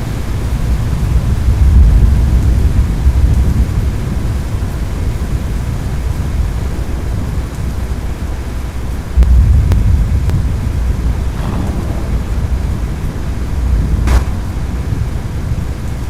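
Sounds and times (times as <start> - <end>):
rain hissing: 5.0 - 16.0
thunder rumble: 7.8 - 16.0.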